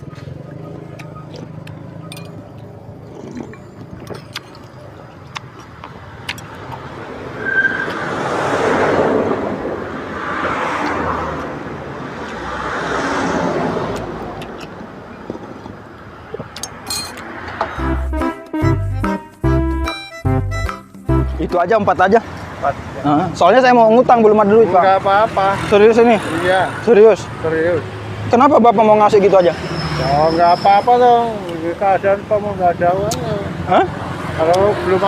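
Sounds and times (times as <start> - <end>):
vehicles passing: 0.0 - 35.0.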